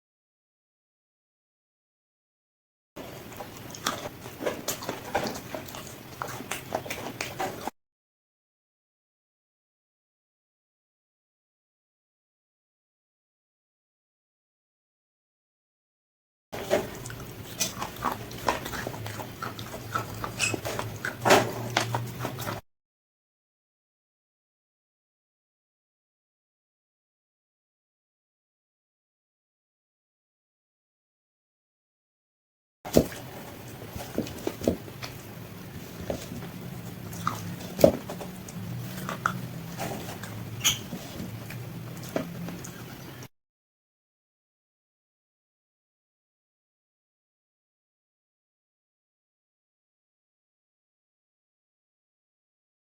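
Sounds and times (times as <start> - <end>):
crunchy chewing: 3.0 - 7.7, 16.6 - 22.6, 32.9 - 43.3
crunching fried chicken: 32.9 - 43.2.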